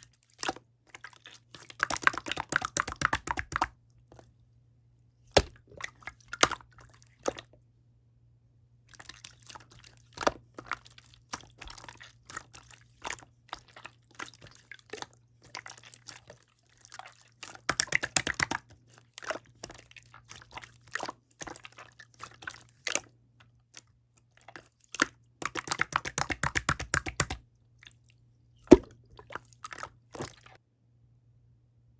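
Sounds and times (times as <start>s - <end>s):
slime squished by hand: 17.4s - 23.0s, 24.5s - 27.4s, 28.7s - 30.6s.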